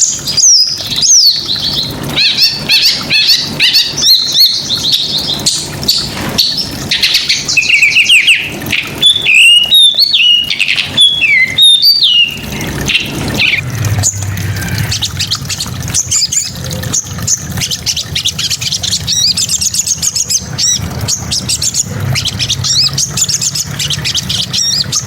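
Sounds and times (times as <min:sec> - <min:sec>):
songbird singing chirps and trills: 0:00.0 - 0:25.0.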